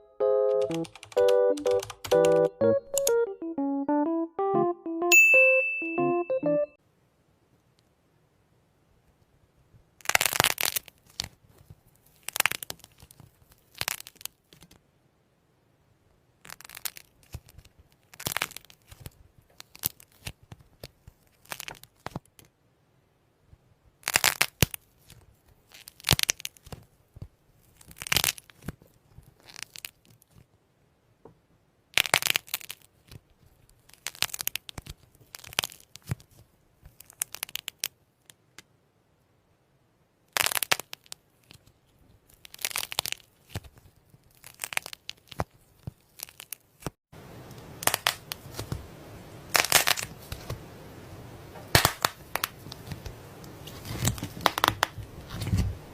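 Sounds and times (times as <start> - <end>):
slime squished by hand: 10.0 - 11.4, 12.1 - 14.4, 42.3 - 46.9.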